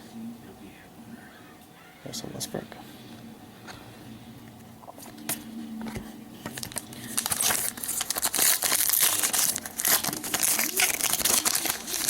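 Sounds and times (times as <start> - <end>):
foil wrapper crinkling and tearing: 6.4 - 12.0.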